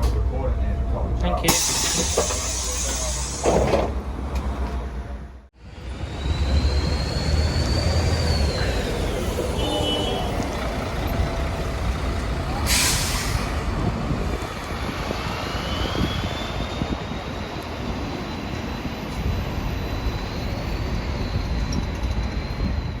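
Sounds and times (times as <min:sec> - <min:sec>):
diesel bus engine: 0:00.0 - 0:23.0
air brakes hiss: 0:01.5 - 0:03.8, 0:12.6 - 0:13.6.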